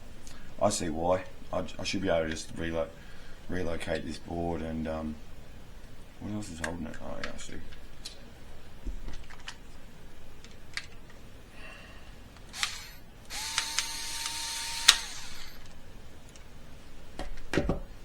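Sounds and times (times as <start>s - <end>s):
power screwdriver running: 12.6s - 15.7s.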